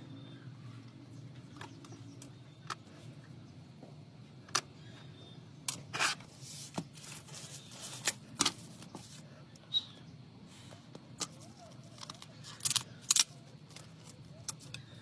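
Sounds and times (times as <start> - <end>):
low steady hum: 0.0 - 15.0
tool scraping: 5.7 - 9.2.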